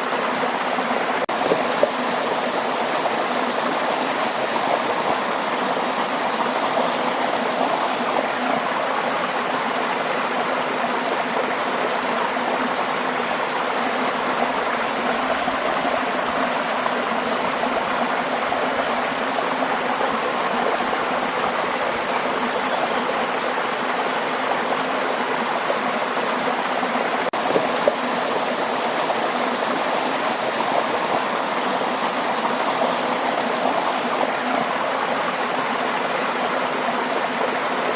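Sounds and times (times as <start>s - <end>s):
waterfall rushing: 0.0s - 37.9s.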